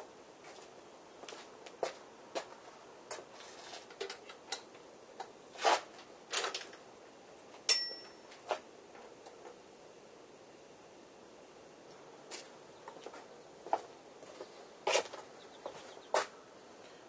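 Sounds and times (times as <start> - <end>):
hand tools clinking: 7.7 - 8.4.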